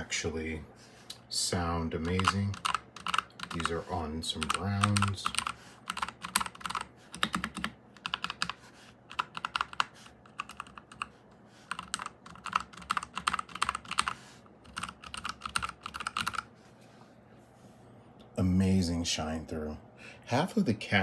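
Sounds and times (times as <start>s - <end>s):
mechanical keyboard typing: 2.0s - 11.1s, 11.7s - 16.5s.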